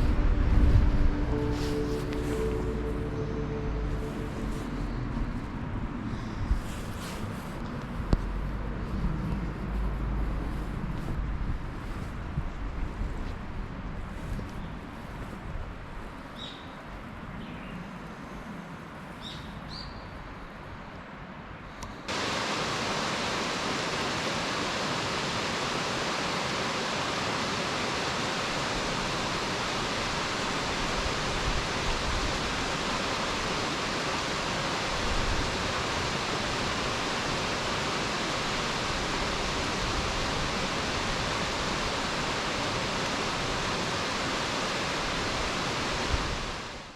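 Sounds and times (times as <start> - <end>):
waterfall crashing: 0.0 - 4.8, 22.1 - 46.9.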